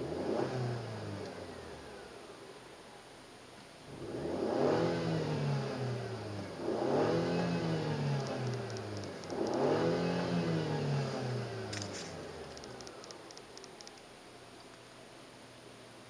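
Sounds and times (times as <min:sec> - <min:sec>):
car engine revving: 0:00.0 - 0:01.5, 0:03.9 - 0:12.5.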